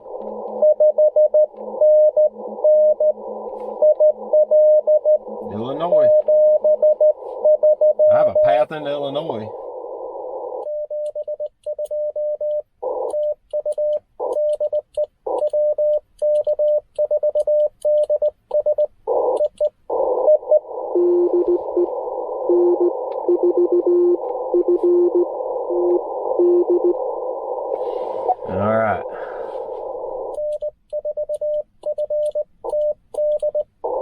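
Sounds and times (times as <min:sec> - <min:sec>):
radio receiver hiss: 0:00.0 - 0:00.7, 0:08.1 - 0:10.7, 0:19.0 - 0:30.6
morse code sidetone: 0:00.4 - 0:08.7, 0:10.6 - 0:27.0, 0:29.2 - 0:34.0.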